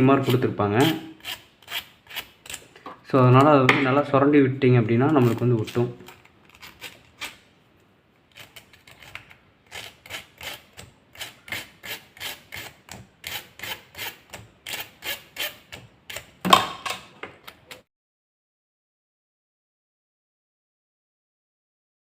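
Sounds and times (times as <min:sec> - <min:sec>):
metal pins being scraped: 0:08.3 - 0:16.3.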